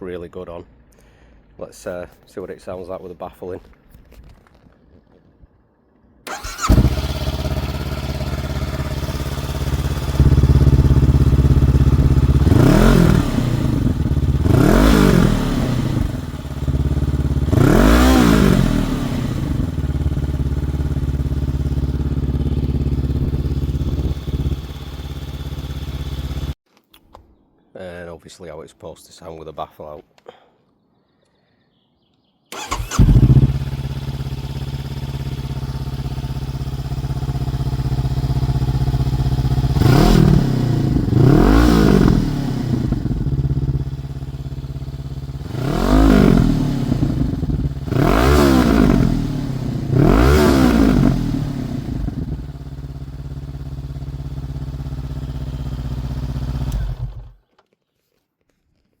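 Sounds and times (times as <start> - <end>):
motorcycle engine revving: 6.3 - 26.6, 32.5 - 57.4.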